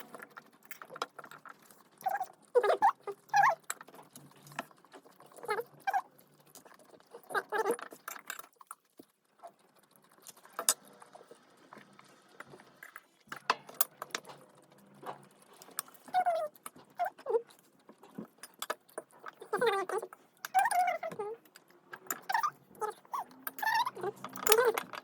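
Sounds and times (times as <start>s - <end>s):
utensils squeaking on dishes: 22.0s - 25.0s.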